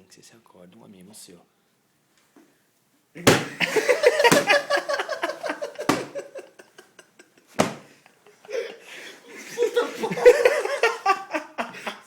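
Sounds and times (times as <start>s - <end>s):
sharp smacks: 3.3s - 4.8s, 5.9s - 6.2s, 7.6s - 8.0s
loud hand clap: 3.3s - 5.0s, 5.8s - 6.3s, 7.6s - 7.9s
laughter: 3.5s - 12.0s.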